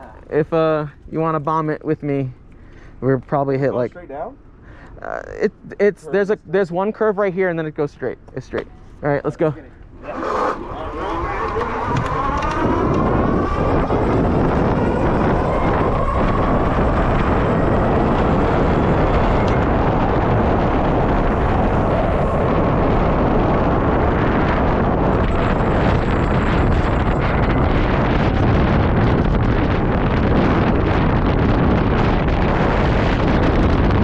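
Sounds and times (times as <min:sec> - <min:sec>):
wind noise on microphone: 0:00.0 - 0:34.0
electric motor whine: 0:10.0 - 0:24.4.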